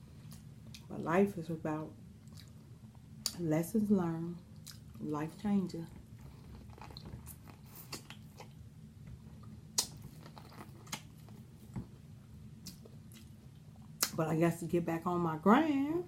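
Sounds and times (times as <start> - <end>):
person chewing with mouth clicks: 2.2 - 2.6, 4.6 - 5.0, 6.1 - 8.6, 9.3 - 11.4, 12.6 - 14.2
small crunches: 6.0 - 8.6, 9.3 - 11.9.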